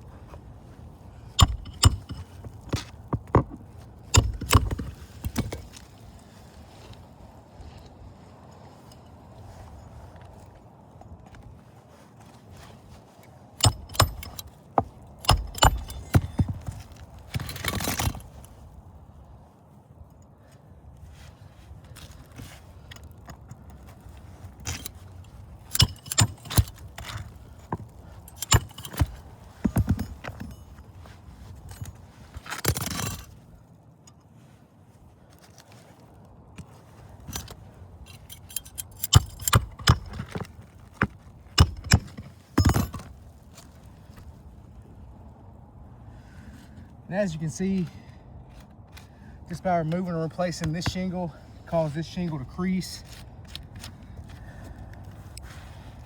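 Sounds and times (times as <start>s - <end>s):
hand tools knocking on roof shingle: 1.4s - 5.6s, 13.6s - 18.1s.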